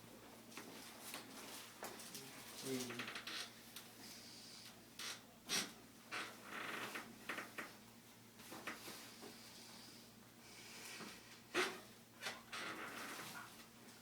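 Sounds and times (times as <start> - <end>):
faint breathing: 8.9 - 11.3.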